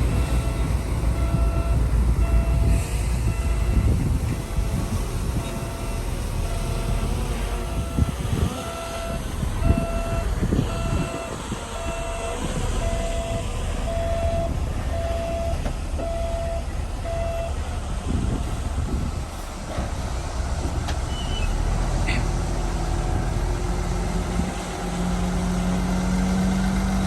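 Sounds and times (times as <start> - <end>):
diesel engine rumble: 0.0 - 27.0
reversing alarm beeps: 0.2 - 7.0, 7.6 - 17.6.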